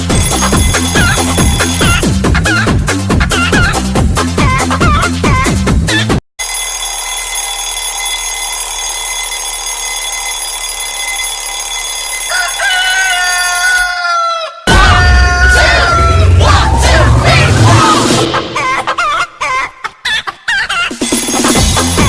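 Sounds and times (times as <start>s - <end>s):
electronic dance music: 0.0s - 6.2s, 14.7s - 19.0s
rooster crow alarm tone: 6.4s - 17.0s.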